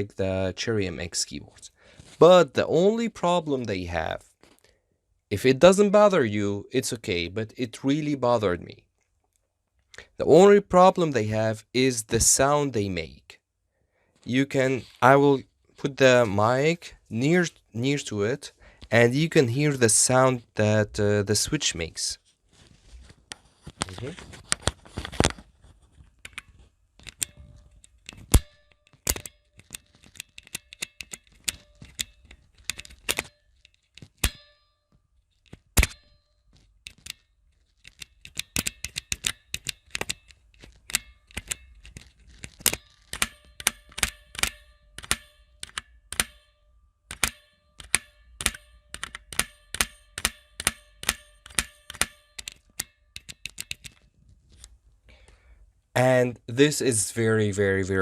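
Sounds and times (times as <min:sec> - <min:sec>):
mechanical keyboard keys clicking: 0:29.0 - 0:33.3, 0:37.8 - 0:46.3, 0:47.1 - 0:54.0.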